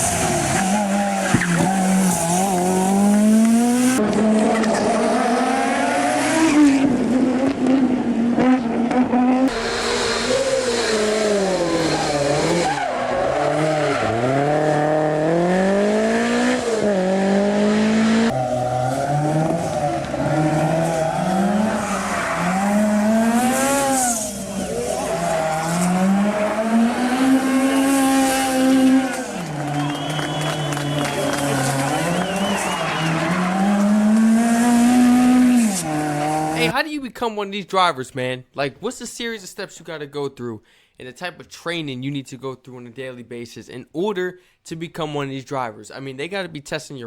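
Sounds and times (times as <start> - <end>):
rally car engine revving: 0.0 - 36.7.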